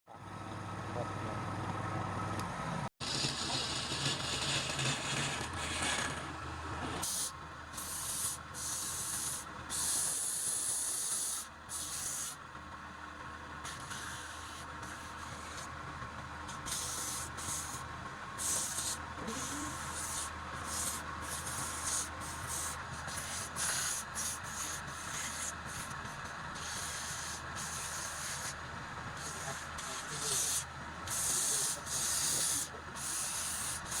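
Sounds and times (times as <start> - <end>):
wood lathe motor hum: 0.4 - 12.3
tool scraping spinning wood: 3.0 - 12.4, 16.5 - 34.0.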